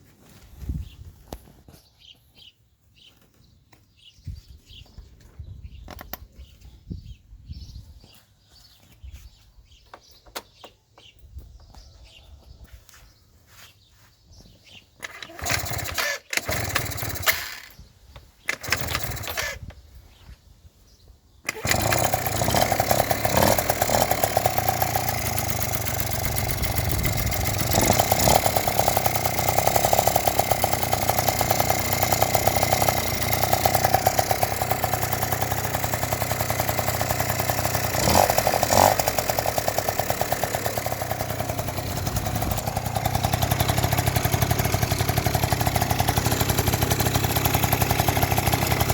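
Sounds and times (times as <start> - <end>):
scooter engine running and revving: 15.0 - 17.7, 18.6 - 19.6, 21.5 - 48.9
scooter engine cranking: 15.0 - 19.8, 21.4 - 48.9.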